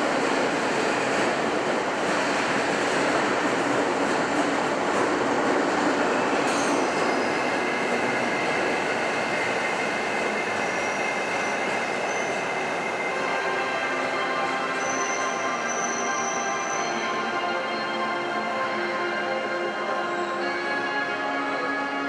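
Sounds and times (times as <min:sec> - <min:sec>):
train wheels rumbling on rail: 0:00.0 - 0:16.7.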